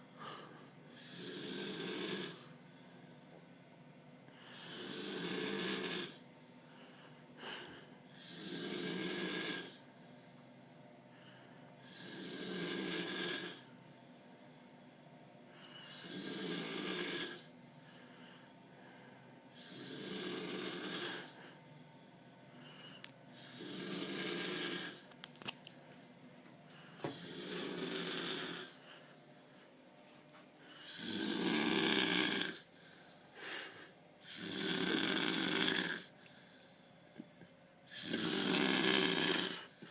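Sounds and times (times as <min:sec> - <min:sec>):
quiet breathing: 0:00.0 - 0:31.2, 0:32.0 - 0:39.9
person snoring: 0:00.2 - 0:02.5, 0:04.4 - 0:06.2, 0:07.4 - 0:09.9, 0:11.2 - 0:13.7, 0:15.6 - 0:17.5, 0:19.5 - 0:21.6, 0:22.6 - 0:25.1, 0:26.7 - 0:29.1, 0:30.6 - 0:36.2, 0:37.9 - 0:39.9.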